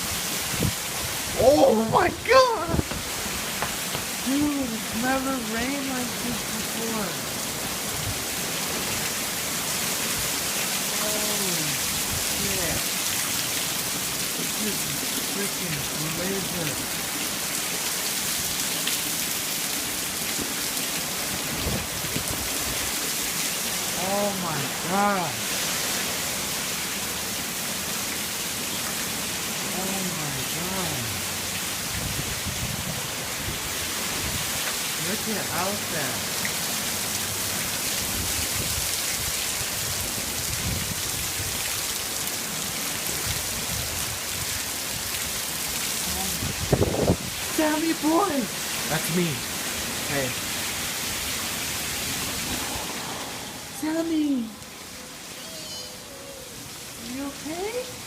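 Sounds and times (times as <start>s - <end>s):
heavy rain pouring: 0.0s - 58.0s
low rumble: 52.2s - 53.8s.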